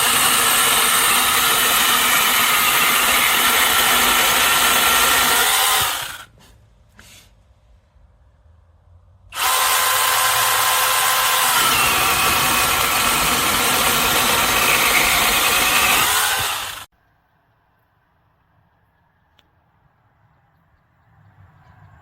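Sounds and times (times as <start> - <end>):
electric chainsaw whining: 0.0 - 6.3, 9.3 - 16.9.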